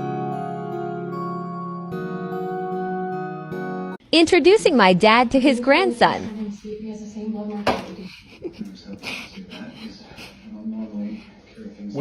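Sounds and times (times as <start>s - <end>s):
background music sustained chords: 0.0s - 4.0s.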